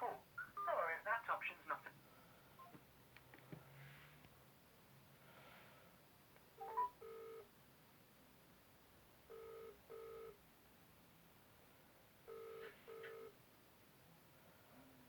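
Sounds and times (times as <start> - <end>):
telephone ringback tone: 6.6 - 7.5, 9.3 - 10.4, 12.3 - 13.4.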